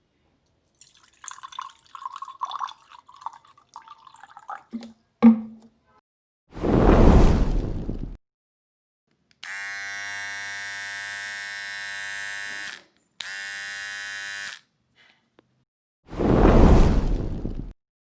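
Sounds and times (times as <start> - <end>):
harsh buzzer: 9.4 - 14.6.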